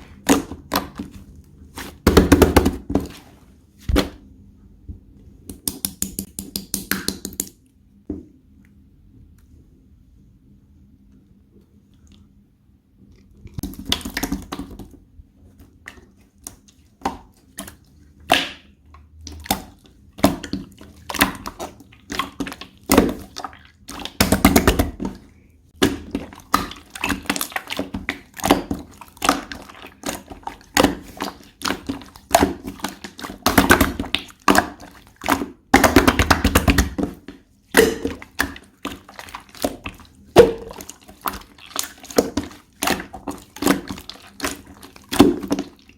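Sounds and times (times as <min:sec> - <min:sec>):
slime squelching stretches: 0:15.8 - 0:45.9.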